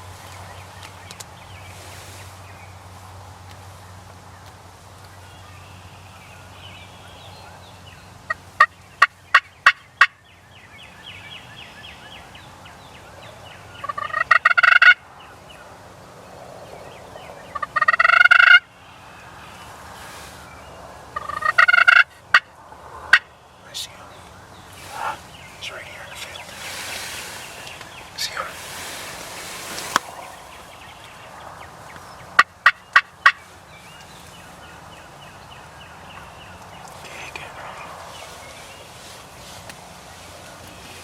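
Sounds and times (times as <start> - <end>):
turkey gobbling: 13.8 - 15.0, 17.6 - 18.6, 21.2 - 22.5, 32.4 - 33.4.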